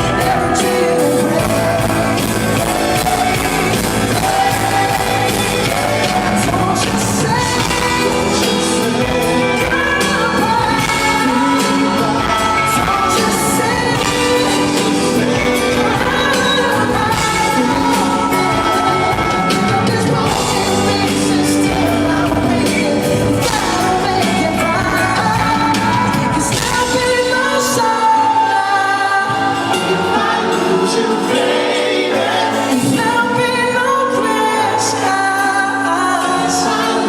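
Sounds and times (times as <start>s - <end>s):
band playing pop ballad: 0.0s - 37.0s
person singing: 0.0s - 37.0s.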